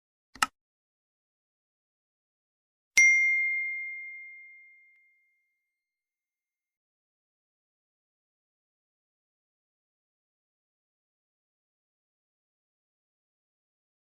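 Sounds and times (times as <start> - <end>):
bell ding: 3.0 - 5.6.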